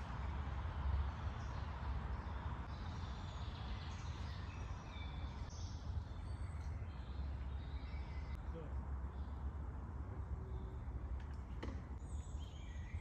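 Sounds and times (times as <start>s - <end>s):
birds chirping and singing: 1.0s - 8.4s, 12.0s - 13.0s.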